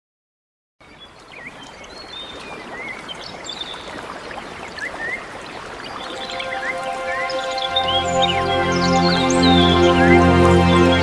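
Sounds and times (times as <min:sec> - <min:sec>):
birds chirping: 0:00.8 - 0:11.0
running water rushing: 0:01.0 - 0:11.0
held music notes: 0:06.0 - 0:11.0.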